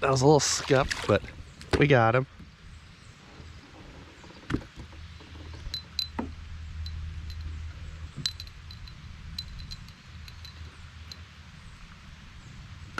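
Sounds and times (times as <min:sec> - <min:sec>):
low steady hum: 0:04.9 - 0:12.9.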